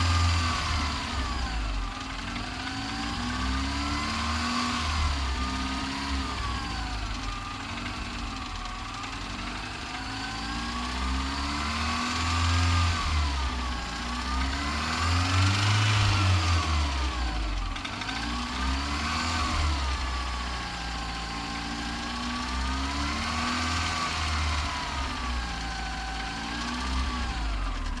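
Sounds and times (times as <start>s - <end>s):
engine revving: 0.0s - 28.0s.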